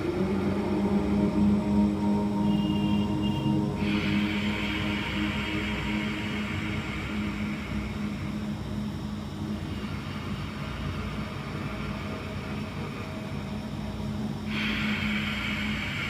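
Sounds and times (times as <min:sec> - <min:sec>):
steady low hum: 0:00.0 - 0:16.0
breathing through narrowed throat: 0:03.8 - 0:08.6, 0:14.4 - 0:16.0.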